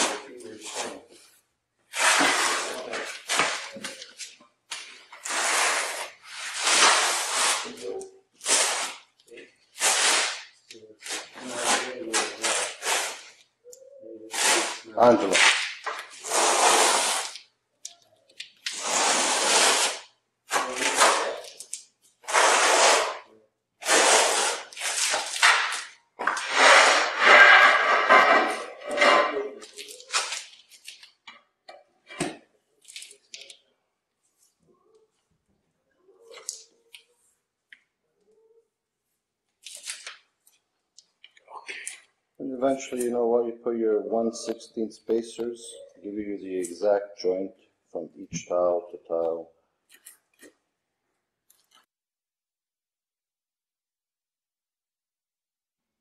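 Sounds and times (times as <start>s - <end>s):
trowel scraping mortar: 1.9s - 4.0s, 5.2s - 9.1s, 9.8s - 13.4s, 14.3s - 17.5s, 18.7s - 21.5s, 22.2s - 30.5s.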